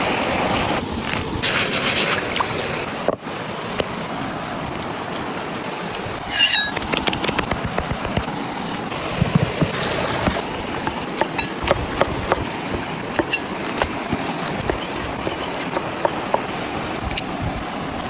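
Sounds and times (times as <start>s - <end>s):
short high squeal: 6.3s - 6.8s.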